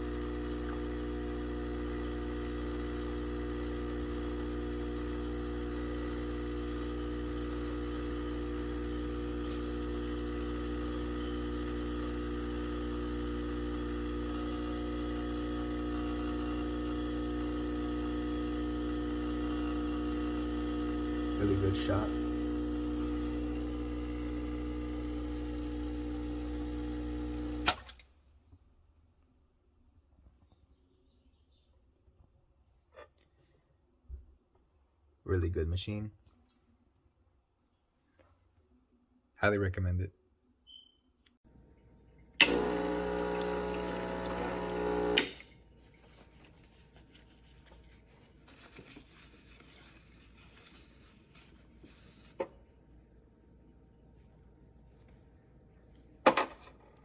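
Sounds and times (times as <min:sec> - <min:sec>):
espresso machine pump buzzing: 0:00.0 - 0:27.8, 0:42.4 - 0:47.0
espresso machine switch click: 0:42.4 - 0:45.4.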